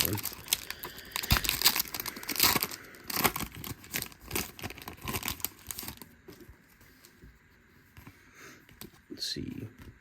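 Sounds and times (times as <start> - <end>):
wrapper crinkling and tearing: 0.0 - 6.1.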